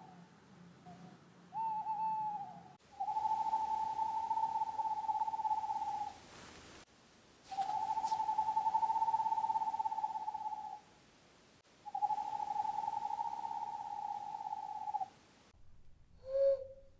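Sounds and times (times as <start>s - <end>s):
owl trilling: 0.9s - 6.2s, 7.5s - 10.8s, 11.9s - 15.1s.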